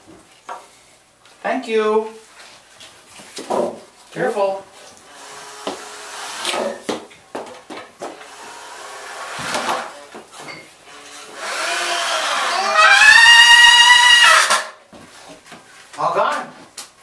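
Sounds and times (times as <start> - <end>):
wood knocks and clunks: 3.4 - 3.9.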